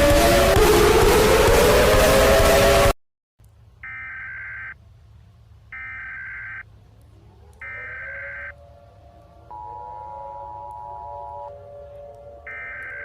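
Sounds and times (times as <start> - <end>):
noisy sound with rising tones: 0.0 - 3.0, 7.6 - 13.0.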